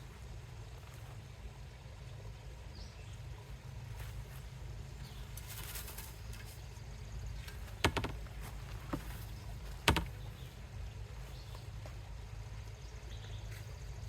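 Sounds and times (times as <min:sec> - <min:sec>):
brief rustle: 0:05.3 - 0:06.6
sharp knocks: 0:07.7 - 0:08.3, 0:09.8 - 0:10.2.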